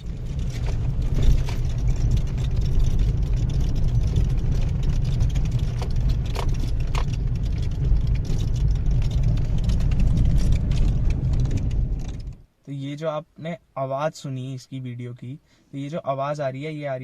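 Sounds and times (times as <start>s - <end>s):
dashboard clicks and rattles: 0.0s - 12.5s
road and engine rumble: 0.0s - 17.0s.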